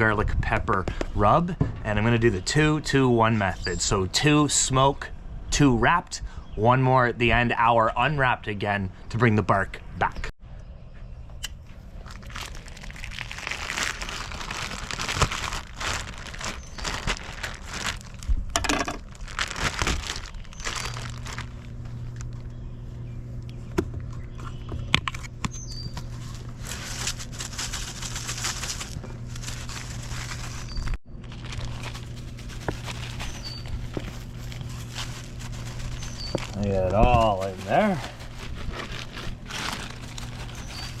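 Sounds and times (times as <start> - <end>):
plastic packaging crinkling: 11.9 - 22.6, 25.2 - 41.0.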